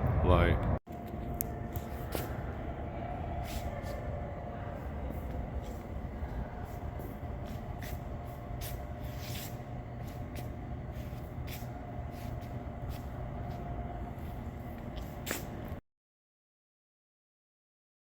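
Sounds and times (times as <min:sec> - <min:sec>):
distant traffic rumble: 0:00.0 - 0:15.8
faint steady whine: 0:00.9 - 0:15.8.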